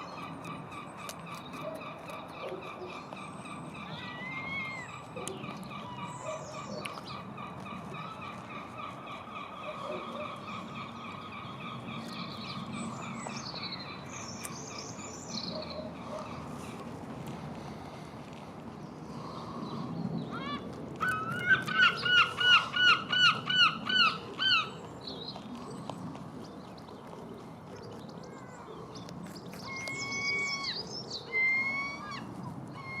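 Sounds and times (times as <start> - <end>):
rabbit chewing carrot: 0.1 - 3.2, 25.1 - 30.0
birds chirping: 21.1 - 33.0.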